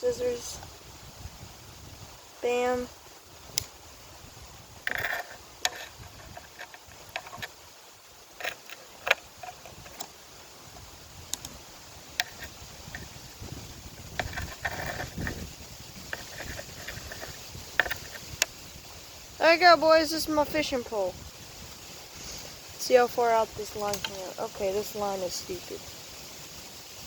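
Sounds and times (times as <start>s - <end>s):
rustling: 1.9s - 27.0s
handling clicks and taps: 16.1s - 18.5s.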